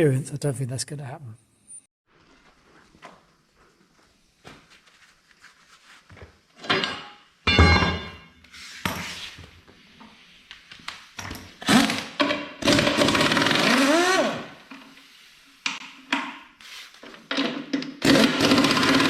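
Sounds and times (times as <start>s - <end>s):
ringing metal strike: 7.5s - 8.4s
power tool running: 12.6s - 14.5s, 18.0s - 19.0s.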